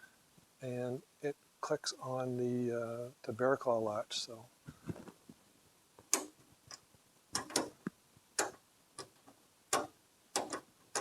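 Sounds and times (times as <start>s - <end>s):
door latch clicking: 7.3s - 7.8s, 8.4s - 11.0s.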